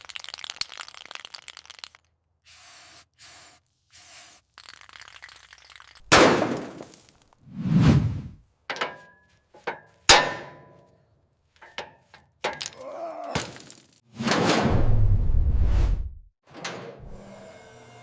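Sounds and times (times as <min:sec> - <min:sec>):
metallic clanks and knocks: 0:08.7 - 0:10.9, 0:11.6 - 0:12.8
low rumbling scrape: 0:14.6 - 0:16.3.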